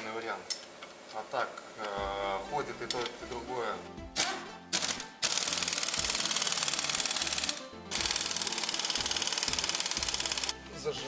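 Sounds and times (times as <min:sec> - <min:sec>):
impact wrench hammering: 0:04.2 - 0:10.5.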